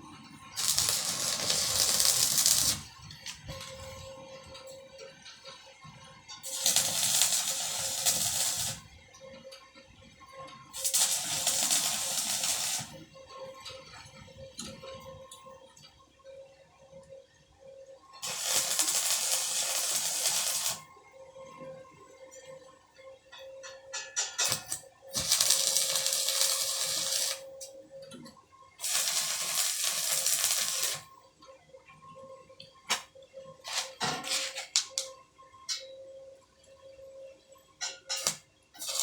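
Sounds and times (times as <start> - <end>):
welding arc crackling: 0.5 - 4.0, 6.4 - 8.9, 10.8 - 13.0, 18.2 - 20.9, 24.5 - 27.5, 28.8 - 31.1, 38.2 - 39.0.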